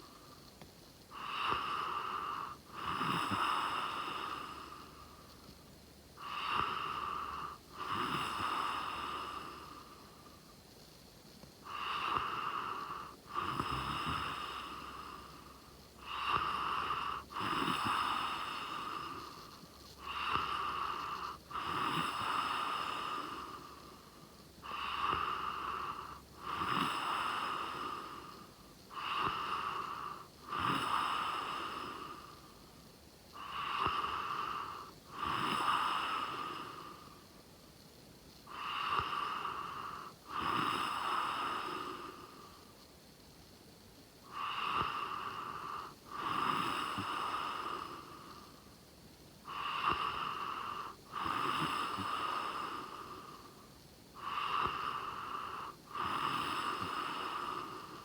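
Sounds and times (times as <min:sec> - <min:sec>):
person snoring: 0:01.1 - 0:05.1, 0:06.2 - 0:10.0, 0:11.6 - 0:24.0, 0:24.6 - 0:32.4, 0:33.4 - 0:37.2, 0:38.5 - 0:42.6, 0:44.3 - 0:48.6, 0:49.5 - 0:58.0.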